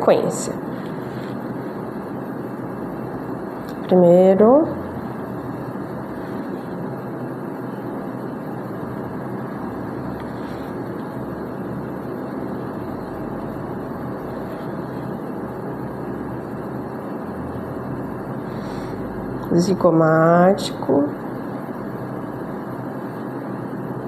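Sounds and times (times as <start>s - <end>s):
steady background noise: 0.0s - 24.0s.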